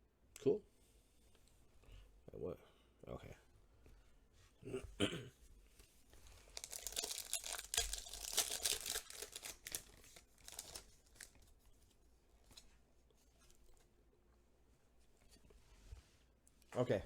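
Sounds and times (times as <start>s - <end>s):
foil wrapper tearing and crinkling: 6.2s - 11.4s.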